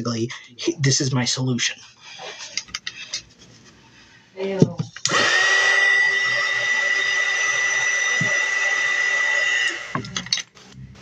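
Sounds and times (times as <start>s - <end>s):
hot-air blower whining: 5.0s - 10.4s.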